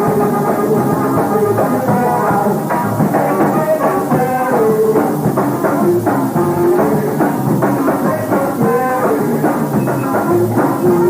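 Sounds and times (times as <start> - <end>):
drums and percussion: 0.0 - 11.0
rock band music: 0.0 - 11.0.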